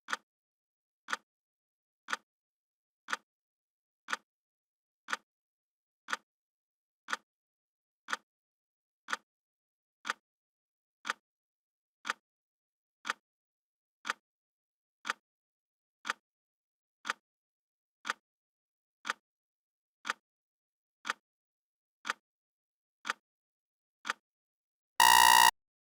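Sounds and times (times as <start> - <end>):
timer clock ticking: 25.0 - 25.5.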